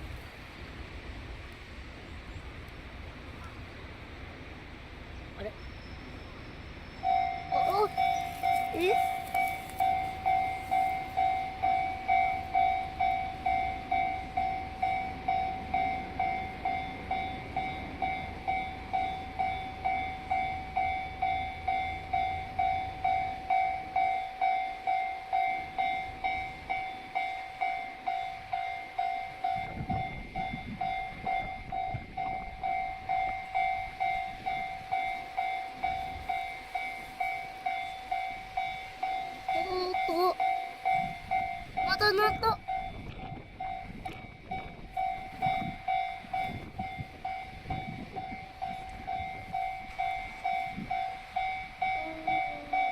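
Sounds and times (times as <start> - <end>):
level crossing bell ringing: 7.0 - 52.9.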